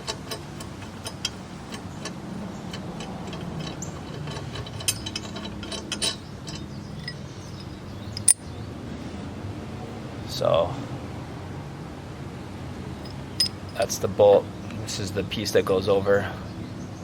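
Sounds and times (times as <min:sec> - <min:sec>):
socket wrench ratchet clicking: 0:00.0 - 0:08.4
sharp metal clink: 0:00.0 - 0:08.5, 0:13.0 - 0:13.8.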